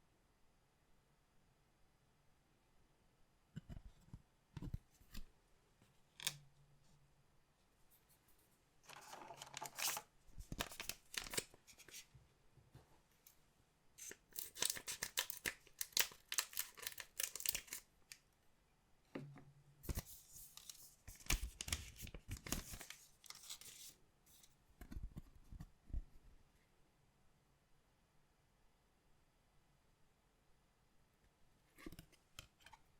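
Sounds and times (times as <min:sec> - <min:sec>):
cards being handled: 0:08.9 - 0:12.0, 0:14.0 - 0:17.8, 0:19.9 - 0:24.0
wrappers tearing and crinkling: 0:14.4 - 0:17.8.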